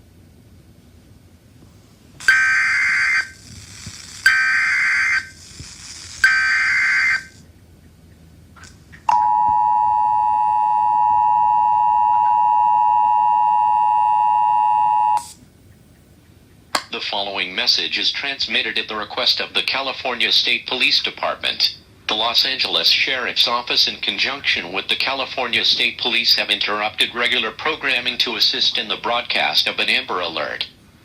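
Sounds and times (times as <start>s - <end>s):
digital data bursts: 2.2s - 7.4s
two-tone attention signal: 9.1s - 15.3s.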